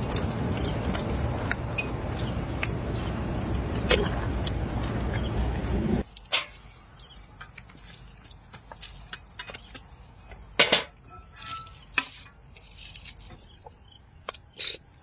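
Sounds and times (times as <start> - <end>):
utensils clattering: 10.6 - 13.4.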